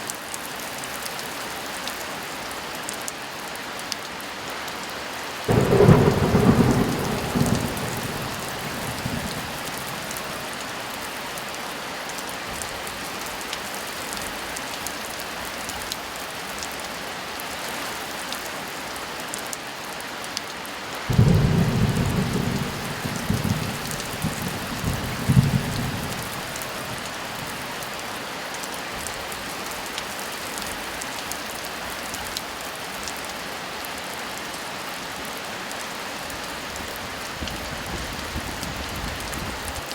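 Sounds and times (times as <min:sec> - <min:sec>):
heavy rain: 0:00.0 - 0:39.9
thunder rumbling: 0:05.5 - 0:11.0, 0:21.1 - 0:28.0.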